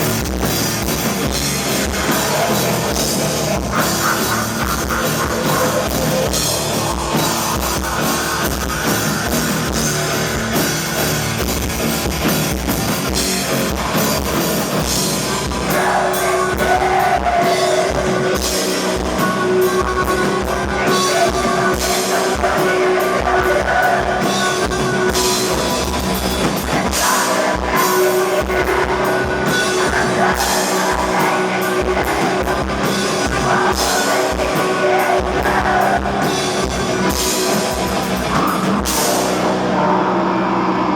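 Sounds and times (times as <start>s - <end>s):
harsh vocal: 0.0s - 10.3s, 13.9s - 40.8s
metal band playing live: 0.0s - 40.9s.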